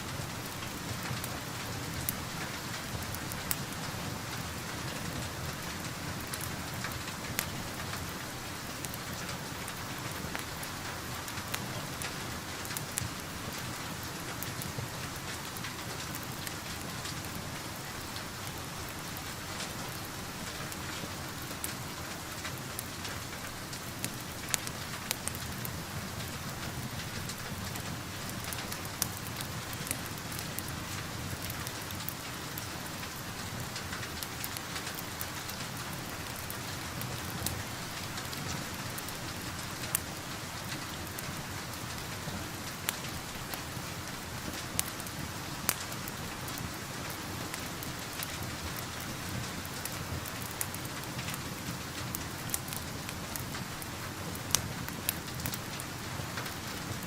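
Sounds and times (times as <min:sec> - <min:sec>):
steady rain: 0:00.0 - 0:57.0
wood fire crackling and popping: 0:00.0 - 0:57.0.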